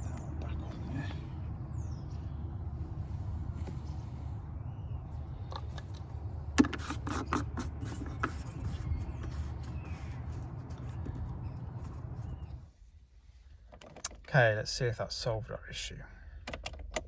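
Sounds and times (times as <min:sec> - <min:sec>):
steady low rumble: 0:00.0 - 0:06.6.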